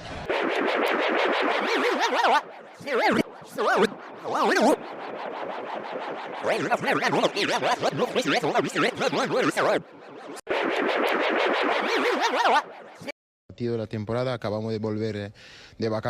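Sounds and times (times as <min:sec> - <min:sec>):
warbling comedic sound effect: 0:00.2 - 0:13.2.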